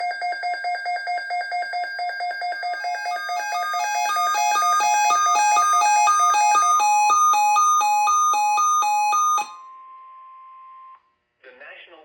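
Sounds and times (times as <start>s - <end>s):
repeating keyboard note: 2.8s - 9.6s
stepping keyboard melody: 2.8s - 9.6s.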